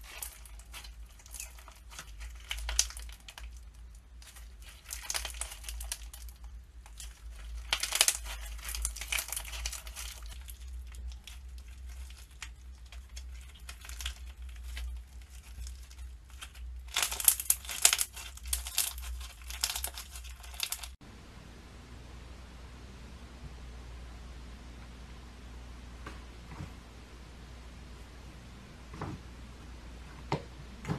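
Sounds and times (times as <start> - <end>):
slime squishing and popping: 0.0 - 21.0.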